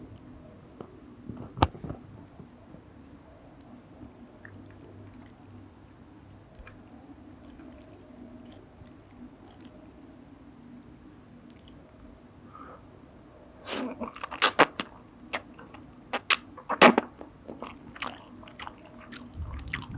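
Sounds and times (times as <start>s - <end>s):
wet chewing: 1.7s - 10.2s, 13.8s - 19.9s.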